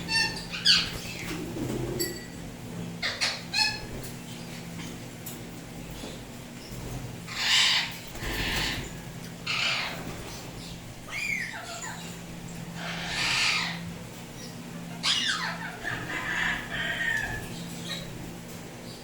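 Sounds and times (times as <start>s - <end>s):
parrot squawking: 0.0s - 1.2s, 3.0s - 3.9s, 7.3s - 10.2s, 11.1s - 13.9s, 14.9s - 18.2s.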